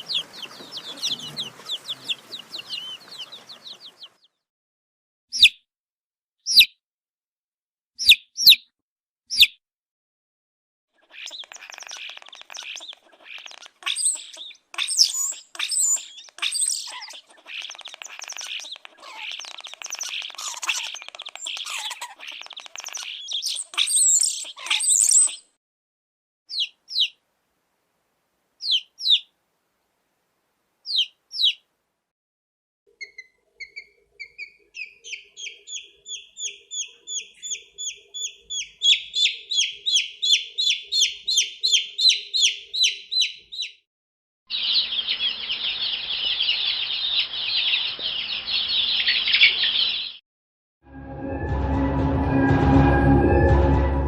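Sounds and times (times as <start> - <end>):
chicks peeping: 0.0 - 4.4, 11.0 - 25.4, 26.5 - 27.2, 28.6 - 29.3, 30.9 - 31.6, 33.0 - 43.7, 44.5 - 50.2
low hum: 50.9 - 54.0.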